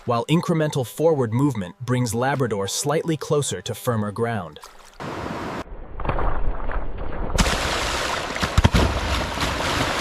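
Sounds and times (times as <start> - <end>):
rushing churning water: 7.4 - 10.0.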